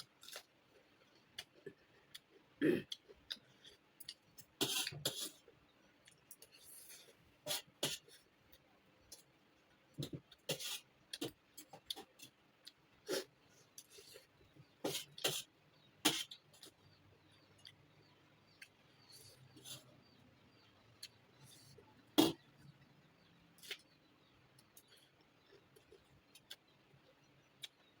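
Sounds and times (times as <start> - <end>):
chewing smacks and clicks: 24.6 - 26.8, 27.4 - 28.0.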